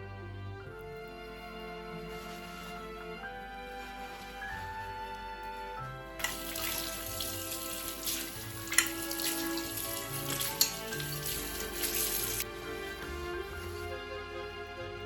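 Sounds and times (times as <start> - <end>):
water running from tap: 6.2 - 12.4.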